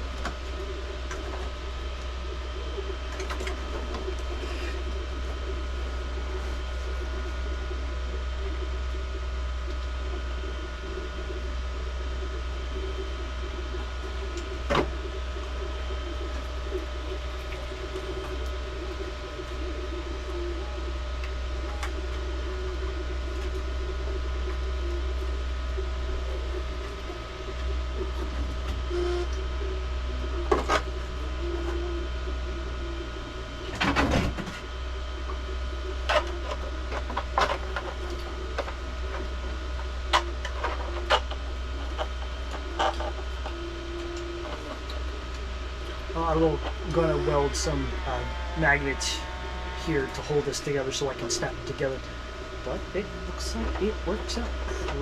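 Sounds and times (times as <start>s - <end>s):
printer motors humming: 0.0s - 55.0s.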